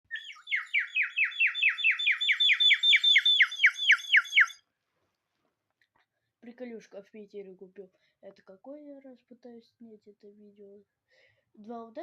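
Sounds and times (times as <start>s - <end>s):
water bird whistle trilling: 0.0s - 4.6s.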